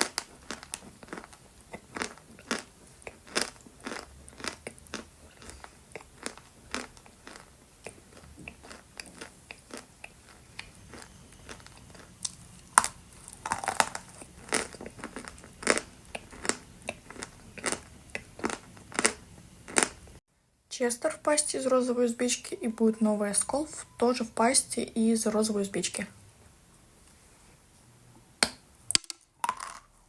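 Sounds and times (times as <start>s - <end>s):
chalk crunching when chewed: 0.0s - 20.0s.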